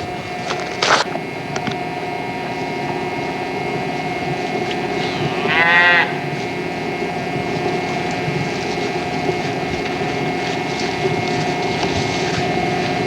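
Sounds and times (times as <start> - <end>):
steady hum: 0.0 - 13.0
animal call: 4.8 - 6.4.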